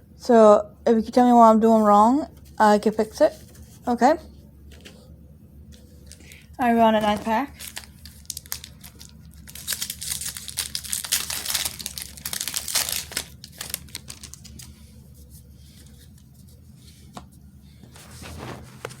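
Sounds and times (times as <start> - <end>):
foil wrapper crinkling and tearing: 6.0 - 14.8.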